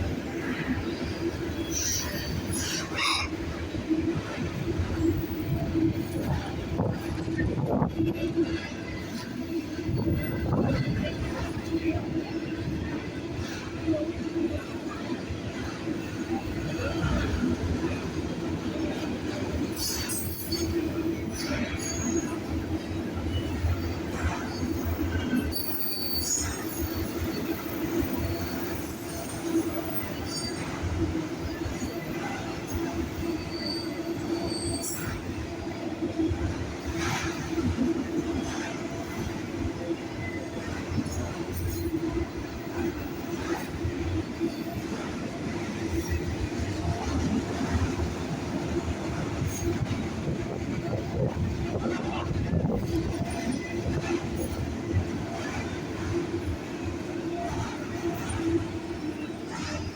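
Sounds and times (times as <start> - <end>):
freight train rumble: 0.0 - 59.9
high-pitched wheel squeals: 24.7 - 29.4.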